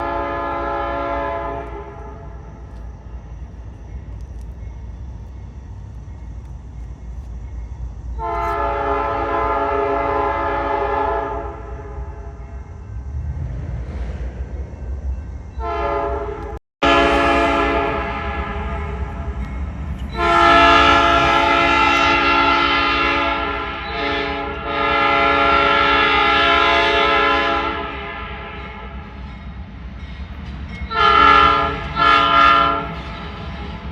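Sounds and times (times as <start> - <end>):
locomotive horn chord blasts: 0.0 - 2.4, 8.2 - 12.3, 15.6 - 19.4, 20.1 - 29.0, 30.9 - 33.0
low train rumble: 0.0 - 33.9.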